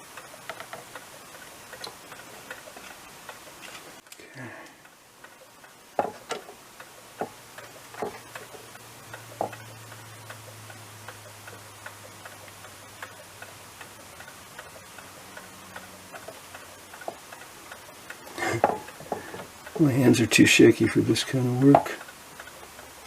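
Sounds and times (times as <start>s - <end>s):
low steady hum: 0.0s - 23.0s
small tools clicking and tapping: 0.4s - 3.0s, 6.0s - 6.6s, 7.2s - 8.7s, 9.4s - 9.7s, 16.2s - 17.5s, 18.2s - 19.8s, 21.6s - 22.6s.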